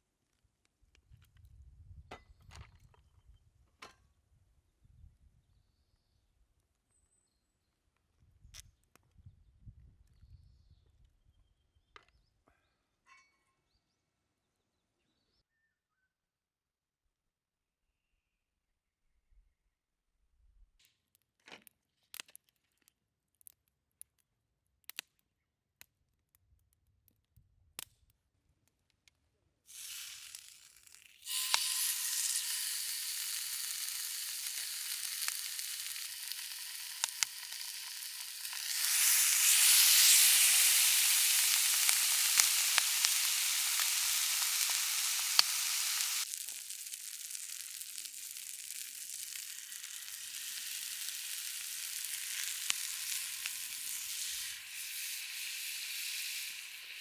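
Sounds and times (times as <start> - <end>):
meat sizzling in a frying pan: 29.7 - 57.0.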